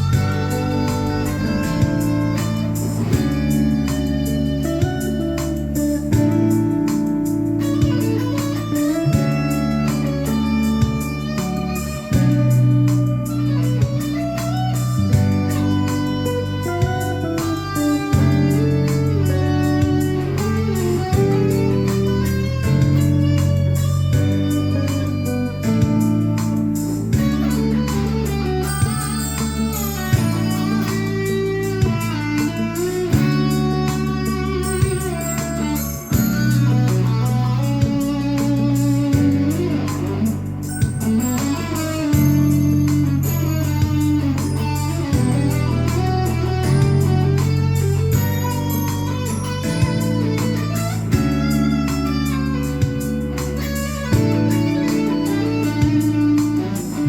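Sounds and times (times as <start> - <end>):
sharp percussive hit: 0.0 - 7.1
sustained low backing: 0.0 - 19.2
electric guitar bending notes: 0.0 - 57.0.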